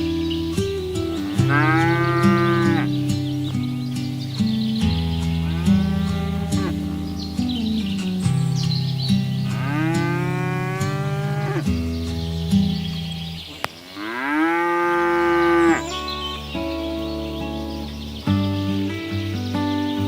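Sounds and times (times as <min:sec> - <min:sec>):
background music: 0:00.0 - 0:13.5, 0:14.1 - 0:20.0
cows mooing: 0:01.2 - 0:03.0, 0:05.4 - 0:07.1, 0:09.4 - 0:11.8, 0:14.0 - 0:16.4.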